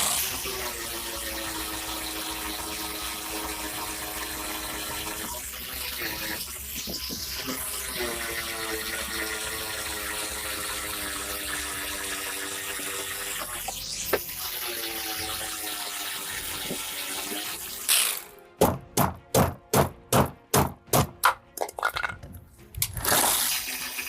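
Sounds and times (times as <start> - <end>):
electric power tool running: 0.0 - 18.4, 23.0 - 24.0
sharp knock: 18.6 - 21.4.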